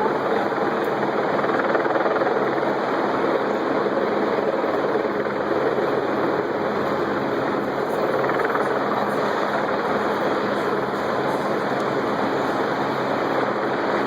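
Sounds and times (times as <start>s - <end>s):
loud steady droning: 0.0s - 14.0s.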